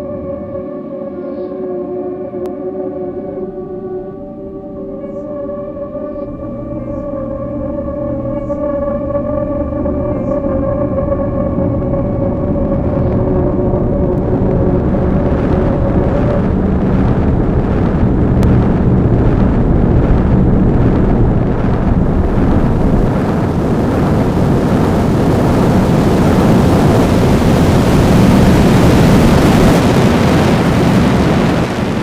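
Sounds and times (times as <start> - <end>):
low drone: 0.0 - 32.0
distorted electronic noise: 9.8 - 32.0.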